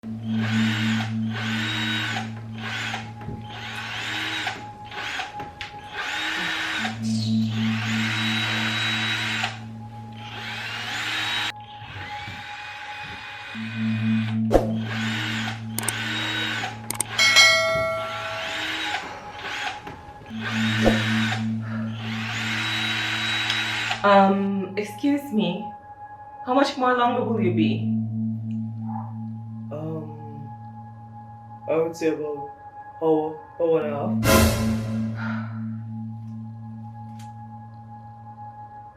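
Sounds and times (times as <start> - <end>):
power tool surging: 0.3 - 9.6, 10.2 - 24.0.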